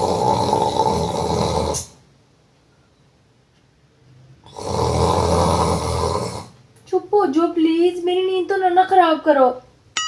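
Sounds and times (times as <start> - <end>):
man snoring: 0.0 - 2.0, 4.4 - 6.6.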